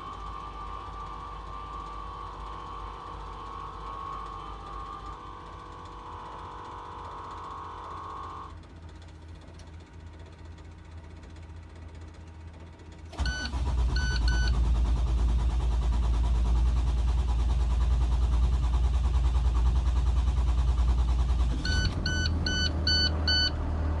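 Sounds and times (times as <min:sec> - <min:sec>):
diesel engine cranking and running: 0:00.1 - 0:24.0
short dashboard beeps: 0:13.2 - 0:14.6, 0:21.6 - 0:23.6.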